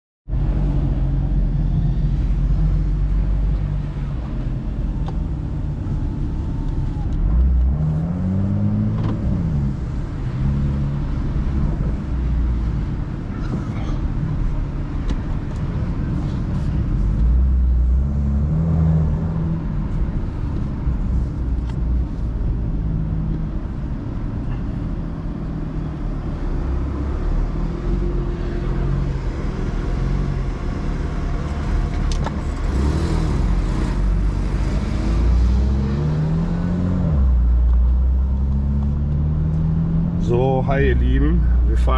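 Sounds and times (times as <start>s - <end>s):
car engine revving from inside: 32.5s - 37.4s.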